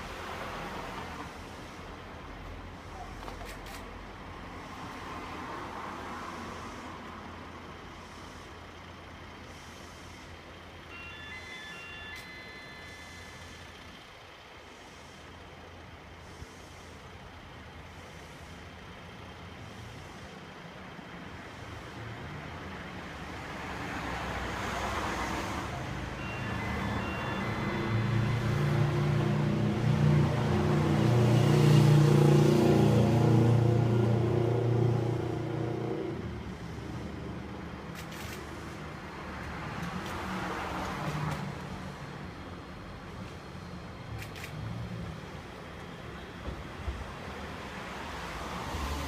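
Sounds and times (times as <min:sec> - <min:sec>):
diesel rail engine humming: 0:00.0 - 0:49.0
short high beeps: 0:10.9 - 0:13.7, 0:26.2 - 0:28.4.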